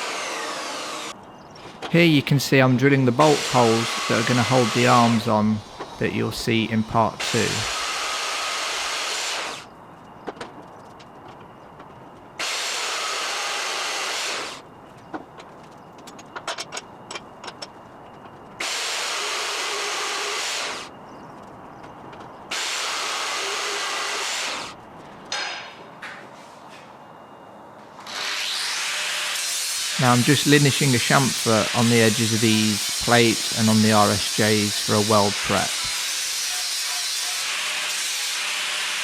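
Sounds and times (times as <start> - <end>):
power drill boring steel: 0.0 - 1.2, 2.6 - 9.7, 12.4 - 14.6, 18.6 - 20.9, 22.5 - 24.7, 28.0 - 39.0.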